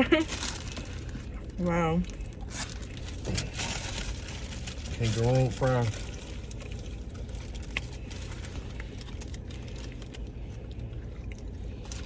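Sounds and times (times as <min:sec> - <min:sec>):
steady low rumble: 0:00.0 - 0:12.0
person eating: 0:06.1 - 0:12.0.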